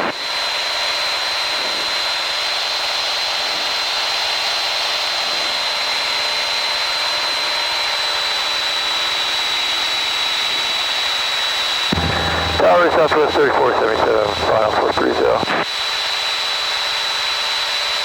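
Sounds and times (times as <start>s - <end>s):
high-pitched engine whine: 11.9s - 15.6s
propeller aircraft cabin noise: 11.9s - 15.6s.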